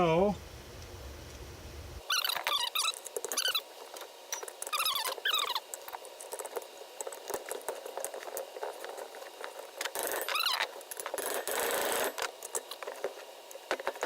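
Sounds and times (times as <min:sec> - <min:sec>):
wavering squeak: 0:02.0 - 0:03.7, 0:04.3 - 0:05.7, 0:10.1 - 0:10.7.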